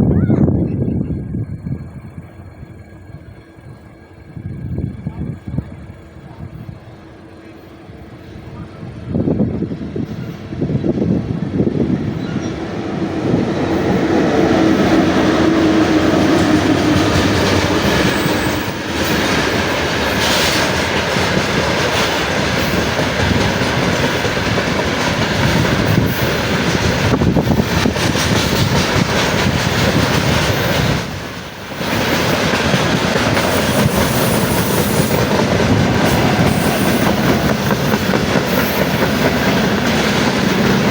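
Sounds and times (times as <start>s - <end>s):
train passing: 0.0s - 40.9s
wheels clattering over rail joints: 12.0s - 40.9s.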